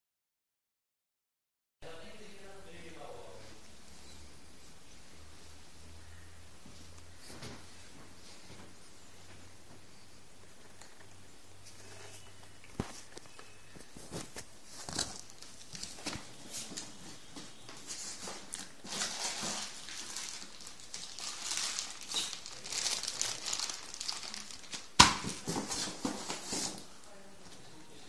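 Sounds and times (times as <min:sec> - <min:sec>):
packaging rustling and crinkling: 0:11.7 - 0:27.2.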